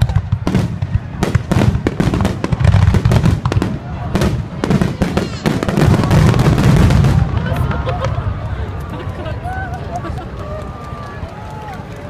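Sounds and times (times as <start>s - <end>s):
continuous low rumble: 0.0s - 12.0s.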